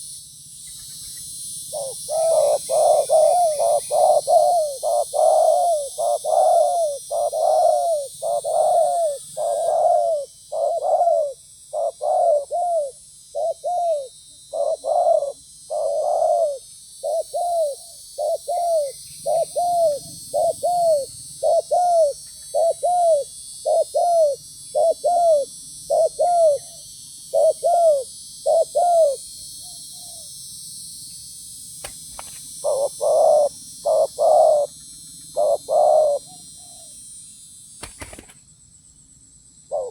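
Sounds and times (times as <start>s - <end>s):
steady high hiss: 0.0s - 39.9s
doves cooing: 1.7s - 29.2s, 32.6s - 36.9s.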